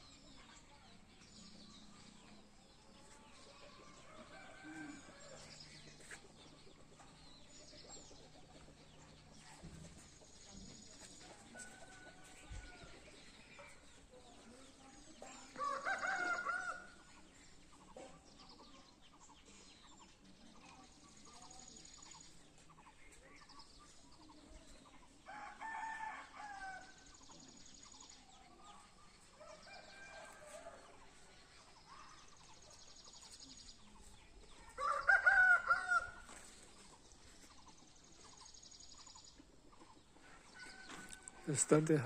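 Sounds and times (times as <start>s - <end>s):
small birds chirping: 0.0s - 42.0s
rooster crowing: 15.6s - 16.9s, 34.8s - 36.2s.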